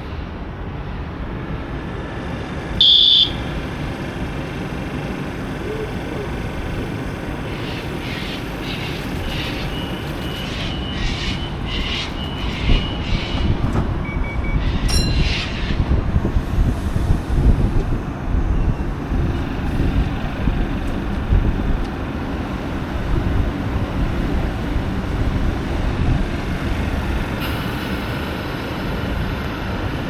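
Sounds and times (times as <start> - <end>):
electric train rumbling: 0.0 - 30.0
wheel squeals: 7.4 - 16.0.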